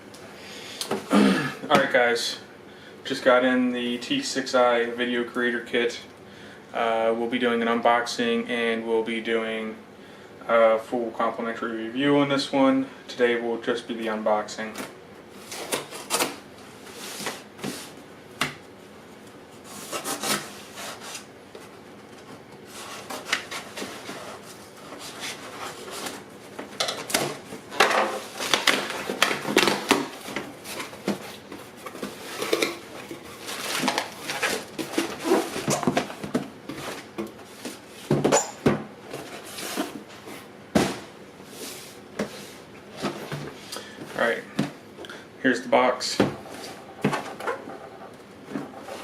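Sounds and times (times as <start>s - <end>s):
packaging rubbing and scraping: 19.6s - 21.3s, 28.2s - 36.1s.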